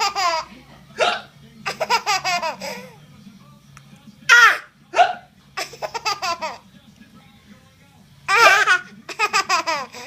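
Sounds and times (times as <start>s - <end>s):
small child laughing: 8.3s - 10.0s.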